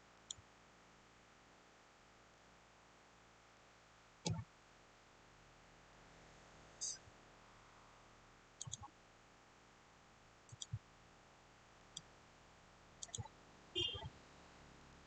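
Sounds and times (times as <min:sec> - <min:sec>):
computer mouse clicking: 0:08.6 - 0:08.9, 0:10.5 - 0:10.8, 0:13.0 - 0:13.3.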